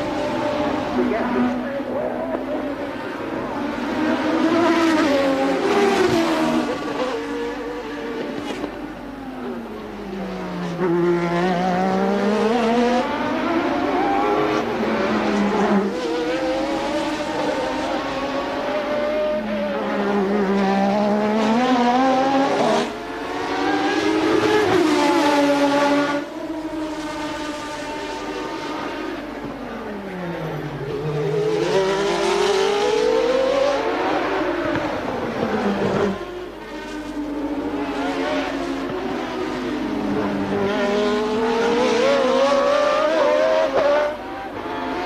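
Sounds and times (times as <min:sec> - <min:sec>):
race car engines at high revs: 0:00.0 - 0:45.0.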